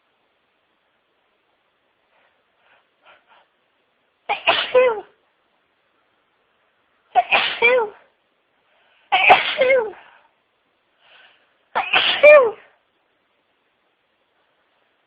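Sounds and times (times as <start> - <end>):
woman sneezing: 4.3 - 5.1, 7.2 - 8.0, 9.2 - 10.0, 11.8 - 12.7.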